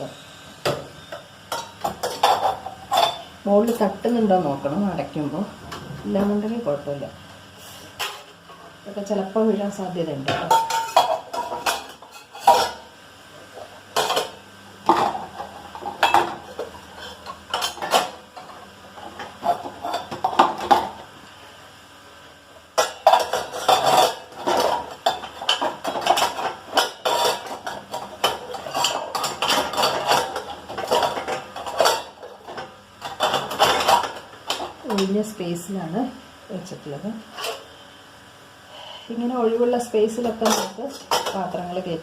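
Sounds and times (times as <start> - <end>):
dishes clattering into racks: 0.0 - 4.2, 8.0 - 8.7, 10.2 - 12.9, 13.5 - 21.1, 22.7 - 35.2, 40.2 - 41.6.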